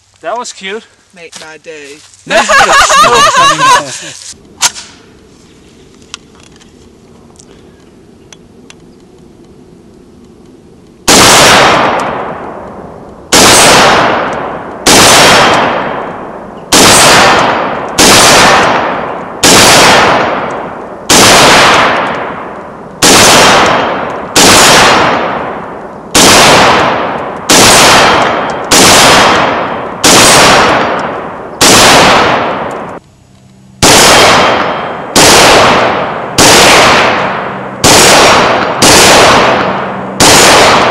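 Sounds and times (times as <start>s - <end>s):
rifle single shots: 11.0s - 33.0s, 33.8s - 40.9s.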